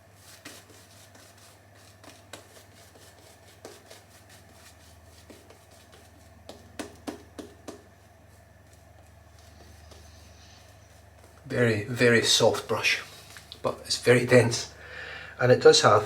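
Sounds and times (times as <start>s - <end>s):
shaving brush strokes: 0.0s - 13.5s.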